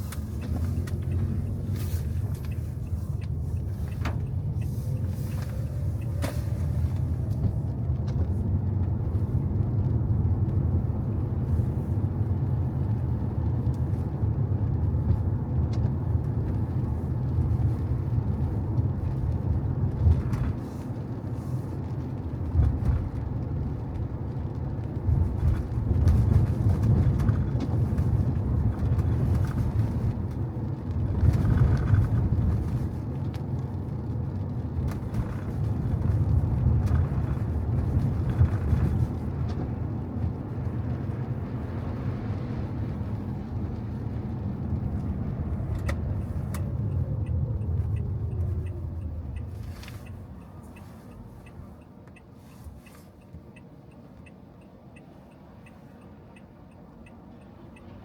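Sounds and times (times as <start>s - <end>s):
car driving on wet road: 0.0s - 58.0s.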